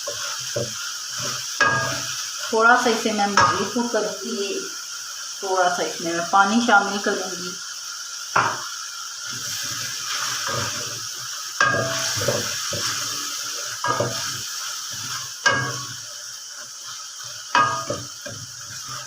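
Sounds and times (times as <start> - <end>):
spoon scraping pan: 0.0 - 2.5, 3.2 - 3.8, 9.3 - 19.0
sauce sizzling in a pan: 0.0 - 19.0
spoon knocking pan rim: 17.5 - 18.1.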